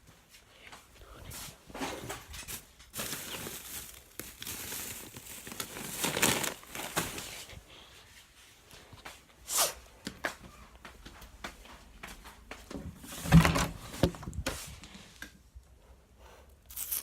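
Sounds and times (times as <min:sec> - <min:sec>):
rustling and handling: 0:01.0 - 0:09.4, 0:12.5 - 0:15.6.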